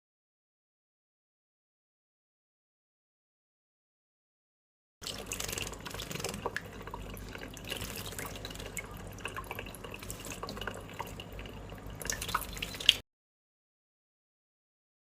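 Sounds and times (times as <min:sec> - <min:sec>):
water trickling: 0:05.0 - 0:13.0.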